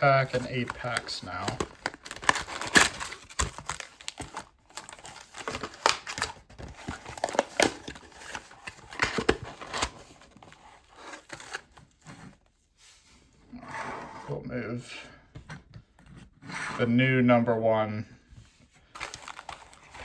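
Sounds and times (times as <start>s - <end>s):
packaging crinkling and tearing: 0.0s - 11.8s, 18.9s - 20.0s.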